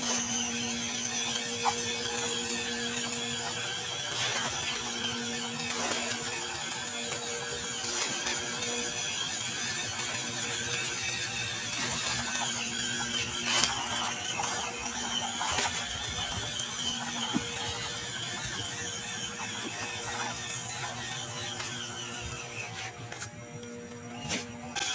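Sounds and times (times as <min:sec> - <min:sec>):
toy motor and gears whirring: 0:00.0 - 0:24.9.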